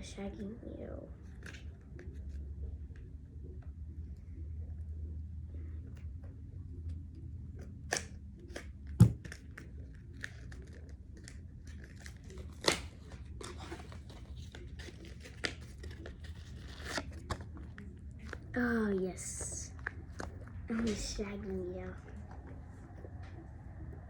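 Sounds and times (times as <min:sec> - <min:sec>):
packaging crackling and rustling: 0:09.2 - 0:18.5.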